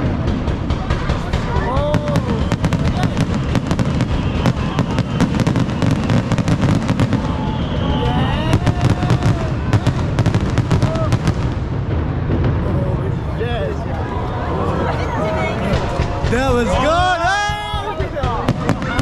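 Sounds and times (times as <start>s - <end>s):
fireworks crackling: 0.0s - 19.0s
low rumble of fireworks bursts: 0.0s - 19.0s.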